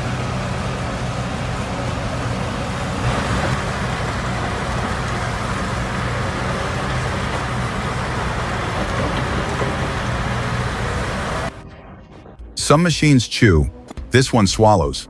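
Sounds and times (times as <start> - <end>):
rushing noise of wood processing: 0.0 - 11.5
low engine hum: 0.0 - 11.6.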